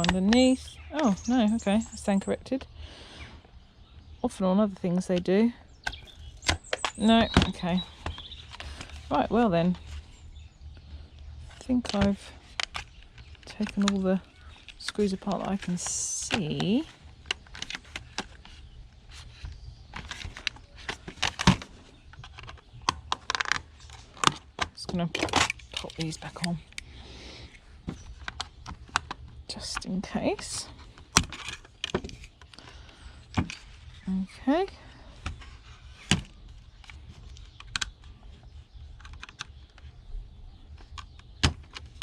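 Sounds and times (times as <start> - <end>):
plastic alarm clock parts clicking: 11.8 - 18.6, 20.0 - 26.8, 36.8 - 38.1, 38.9 - 39.9
clicks and taps of plastic casing: 19.4 - 26.8, 27.8 - 33.6, 36.1 - 40.0.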